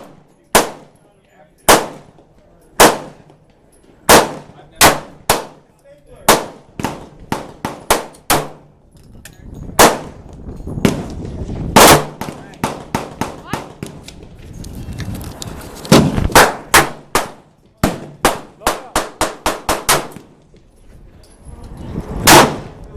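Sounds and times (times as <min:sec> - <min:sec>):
gunshots: 0:00.0 - 0:00.9, 0:01.7 - 0:02.1, 0:02.8 - 0:03.2, 0:04.1 - 0:05.6, 0:06.2 - 0:08.7, 0:09.8 - 0:10.2, 0:10.8 - 0:14.0, 0:15.9 - 0:20.3, 0:22.2 - 0:22.8.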